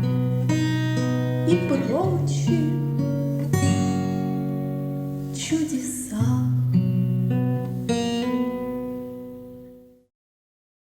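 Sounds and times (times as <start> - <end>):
acoustic guitar chords and notes: 0.0 - 10.1.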